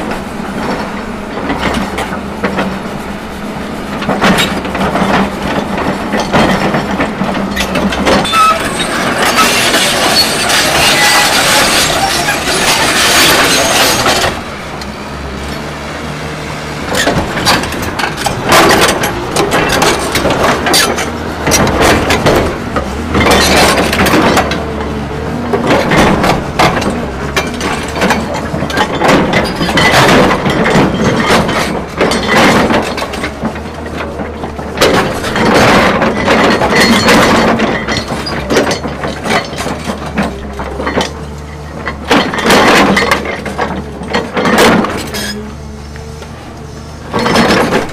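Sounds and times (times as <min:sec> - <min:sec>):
excavator engine running: 0:00.0 - 0:47.9
soil and stone cracking and clinking: 0:04.0 - 0:14.9, 0:16.9 - 0:24.8, 0:25.4 - 0:46.2
ripper scraping frozen ground: 0:08.2 - 0:14.4.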